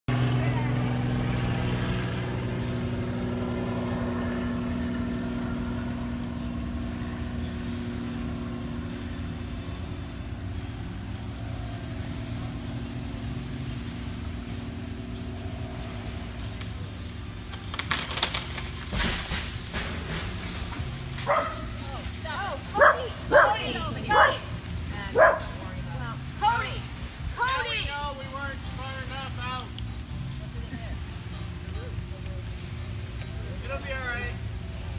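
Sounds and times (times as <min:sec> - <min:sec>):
engine running: 0:00.0 - 0:34.9
wood cracking and splintering: 0:17.4 - 0:22.0.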